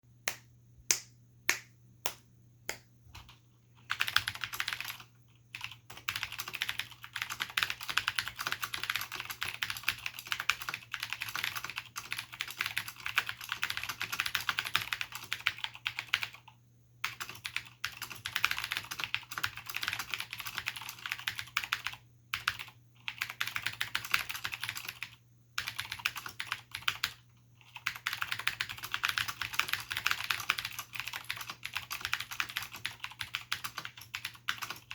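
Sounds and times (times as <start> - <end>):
clicky keyboard typing: 2.7 - 34.9.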